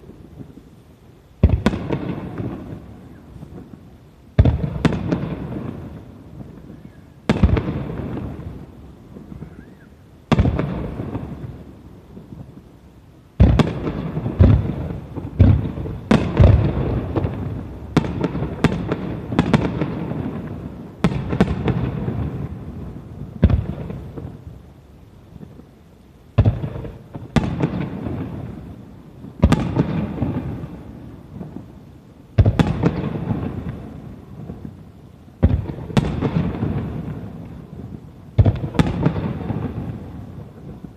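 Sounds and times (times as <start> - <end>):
firework shells booming with echo: 1.4 - 3.8, 4.4 - 11.7, 13.4 - 24.5, 26.3 - 31.7, 32.3 - 40.9.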